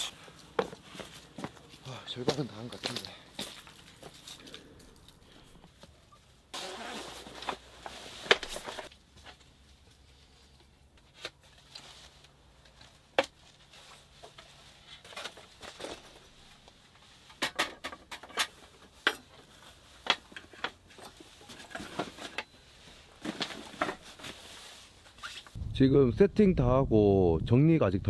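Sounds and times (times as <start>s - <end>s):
camping gear clicks and rustles: 0.2s - 25.6s
camping gear clattering: 11.1s - 25.6s.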